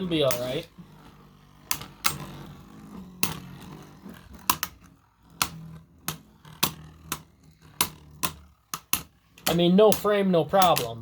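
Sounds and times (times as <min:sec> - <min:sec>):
spinning tops clacking together: 0:00.0 - 0:11.0.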